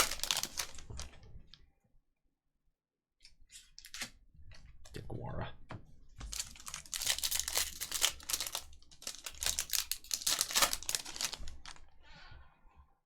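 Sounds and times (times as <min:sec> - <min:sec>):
foil wrappers crinkling and tearing: 0:00.0 - 0:01.3, 0:06.3 - 0:12.0.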